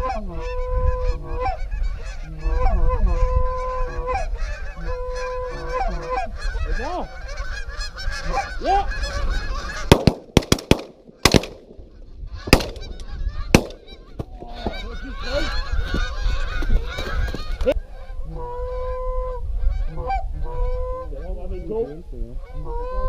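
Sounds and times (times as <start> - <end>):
geese honking: 0.0 - 10.1, 11.9 - 23.0
shotgun shots: 9.9 - 11.9, 12.5 - 14.3.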